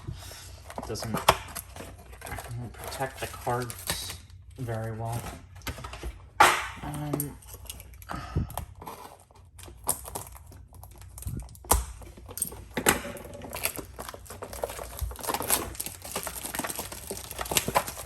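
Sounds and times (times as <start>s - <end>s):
foil packs taps and crinkles: 0.6s - 6.0s, 9.0s - 18.0s.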